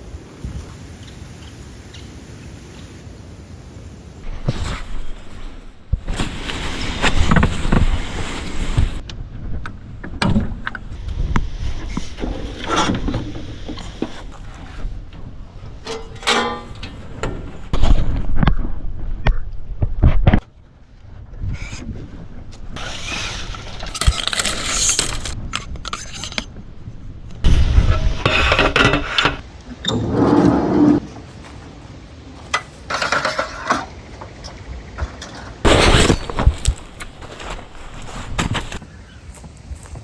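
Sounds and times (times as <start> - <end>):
wind buffeting microphone: 4.0 - 16.0, 21.0 - 24.2, 25.2 - 31.1
knocks and scrapes of gear: 35.0 - 40.0.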